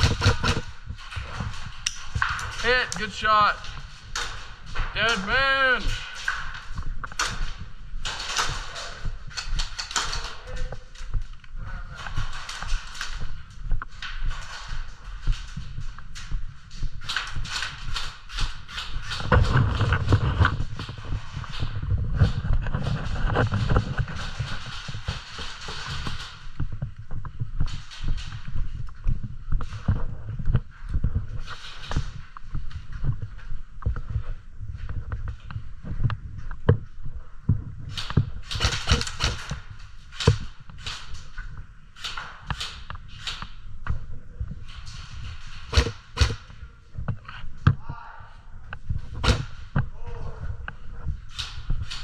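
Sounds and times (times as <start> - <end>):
knocks and thuds on camera: 0.0 - 1.5, 45.7 - 46.4
gear knocking and rattling: 0.0 - 3.0, 37.5 - 41.4, 44.7 - 46.6
footsteps: 0.0 - 47.8.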